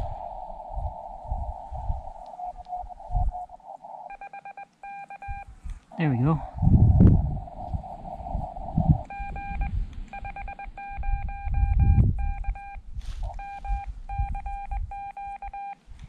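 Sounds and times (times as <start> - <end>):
radio receiver hiss: 0.0 - 6.5, 7.1 - 11.2, 13.1 - 14.5
morse code beeping tone: 4.1 - 5.5, 9.0 - 15.8
low rumbling thumps: 6.4 - 10.6.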